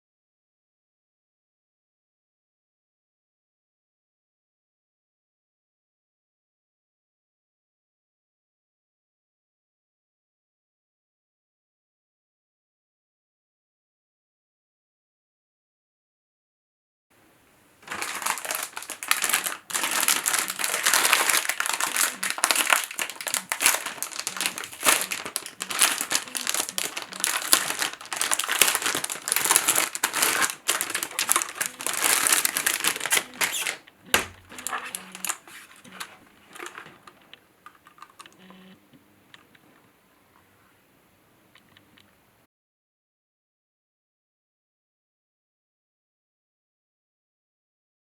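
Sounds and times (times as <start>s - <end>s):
plastic packaging crinkling: 17.8s - 38.5s.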